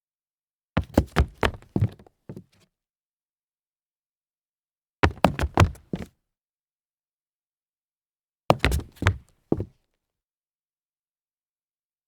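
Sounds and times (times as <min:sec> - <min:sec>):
shoes stumbling on concrete: 0:00.8 - 0:02.0, 0:05.0 - 0:06.1, 0:08.5 - 0:09.7.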